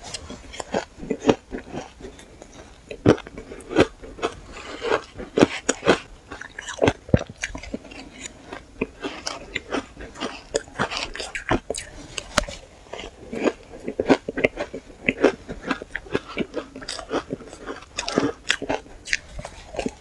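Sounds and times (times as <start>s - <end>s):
chewing crunchy shaved ice: 0.0s - 20.0s.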